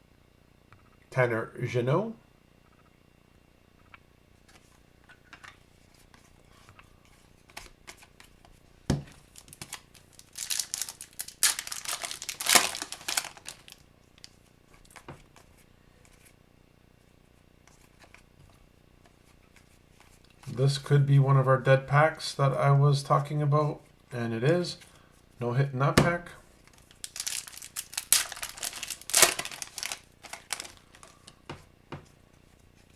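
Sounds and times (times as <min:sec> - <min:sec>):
wrapper being torn and crinkled: 0:09.2 - 0:15.0, 0:26.6 - 0:31.2.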